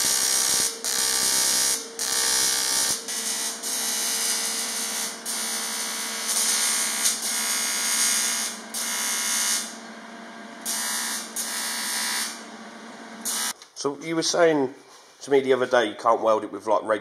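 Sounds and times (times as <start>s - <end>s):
welding arc buzzing: 0.0s - 13.6s.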